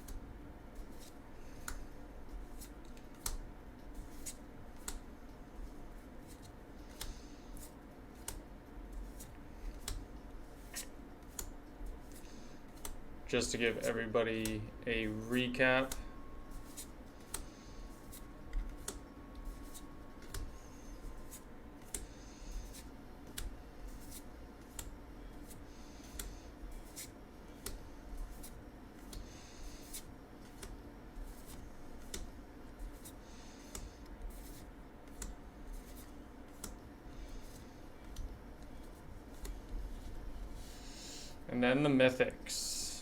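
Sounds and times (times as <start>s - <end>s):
cards clicking and snapping: 0.8s - 1.8s, 2.5s - 5.1s, 6.2s - 13.0s, 15.8s - 20.5s, 21.1s - 39.7s
cards sliding over cards: 0.8s - 41.4s.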